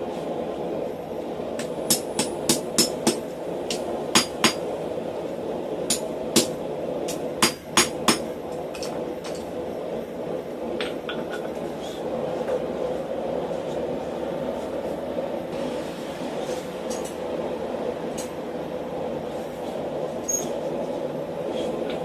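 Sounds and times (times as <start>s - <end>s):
hammer striking steel on anvil: 1.6s - 4.6s, 5.9s - 8.3s.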